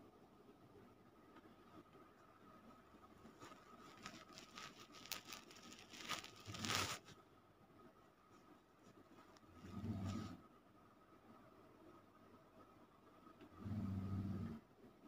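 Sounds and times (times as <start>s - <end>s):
dog snoring: 9.6s - 10.4s, 13.6s - 14.6s.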